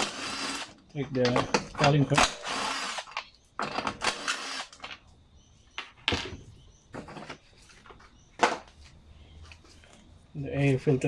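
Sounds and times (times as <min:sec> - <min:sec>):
plastic parts clicking and knocking: 0:00.8 - 0:05.1, 0:05.8 - 0:08.8.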